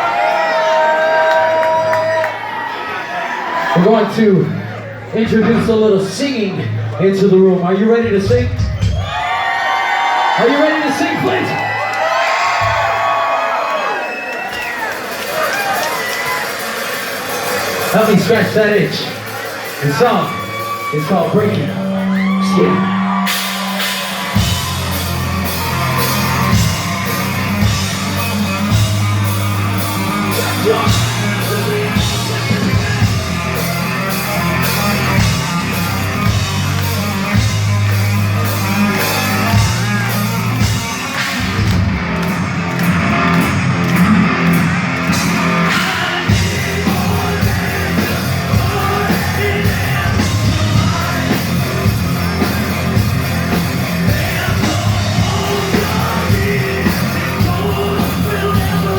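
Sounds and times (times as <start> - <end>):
heavy bass: 4.0 - 9.4, 17.8 - 58.9
pounding drums: 8.0 - 9.8, 12.2 - 13.6, 14.6 - 58.9
singer yelling: 8.0 - 12.0, 19.8 - 28.9, 30.0 - 36.3, 45.5 - 58.9
distorted guitars: 16.8 - 58.9.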